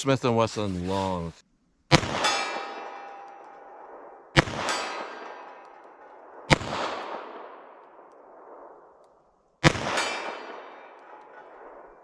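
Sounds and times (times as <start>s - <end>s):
steel target clanging: 1.9s - 3.8s, 4.4s - 6.1s, 9.9s - 11.7s
revolver gunshots: 1.9s - 12.0s.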